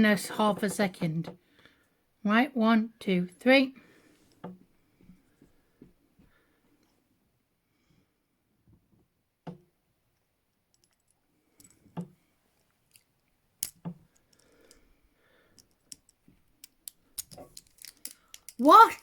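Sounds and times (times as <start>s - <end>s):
handcuff lock clicking: 12.9s - 14.8s, 15.6s - 19.0s.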